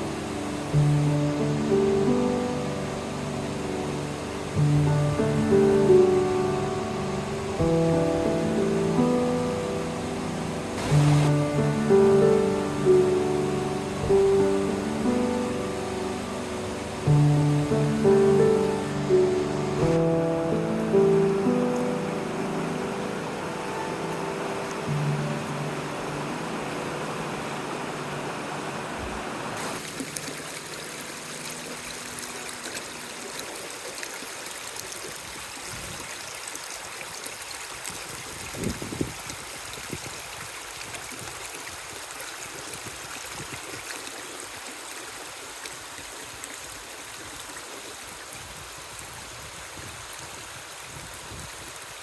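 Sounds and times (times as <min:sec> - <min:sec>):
background music: 0:00.0 - 0:33.1
river water rushing: 0:00.0 - 0:52.0.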